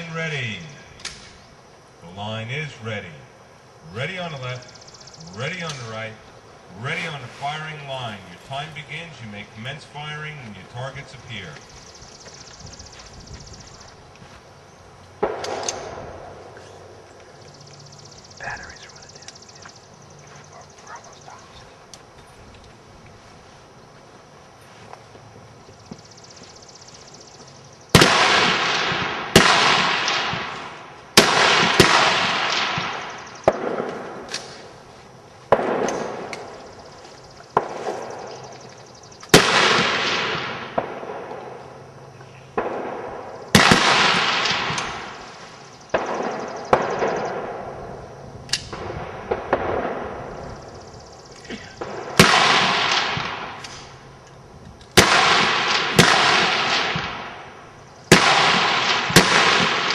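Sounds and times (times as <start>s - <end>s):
rifle shots with echo: 15.2s - 16.9s, 27.9s - 34.8s, 35.5s - 36.7s, 37.5s - 38.6s, 39.3s - 41.6s, 42.6s - 45.3s, 45.9s - 50.5s, 51.8s - 54.0s, 55.0s - 59.9s.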